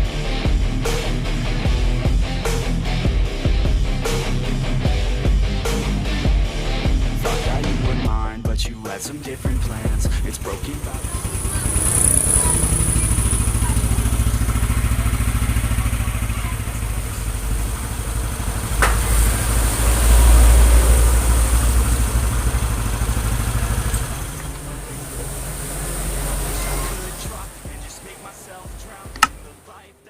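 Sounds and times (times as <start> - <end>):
scooter engine running: 9.2 - 30.0
sharp click: 29.1 - 29.4.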